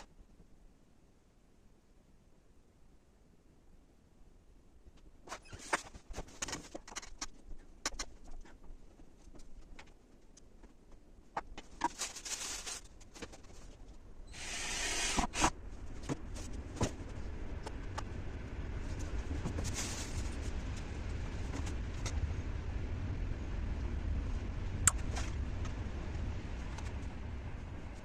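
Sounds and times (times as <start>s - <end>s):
rustling or scraping: 5.0s - 22.3s
low rumble: 15.5s - 28.0s.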